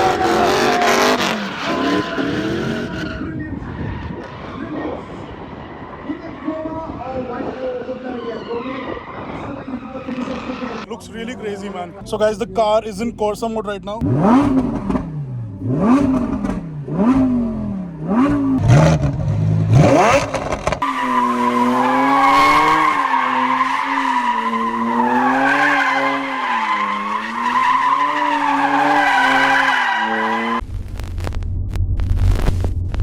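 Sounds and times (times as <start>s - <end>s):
high squeal: 0.0s - 6.6s, 7.6s - 10.9s
car engine revving: 0.0s - 10.9s, 14.0s - 30.6s.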